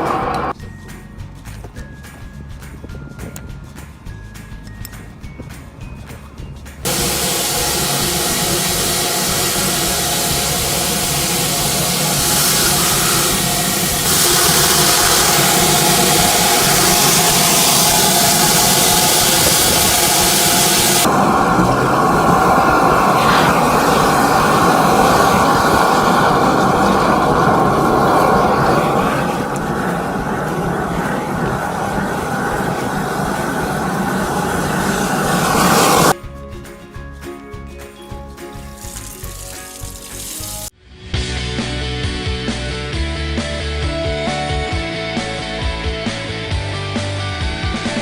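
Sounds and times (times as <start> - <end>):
hiss of water jetting: 6.9 - 36.2, 38.8 - 40.7
washer motor drone: 6.9 - 36.2.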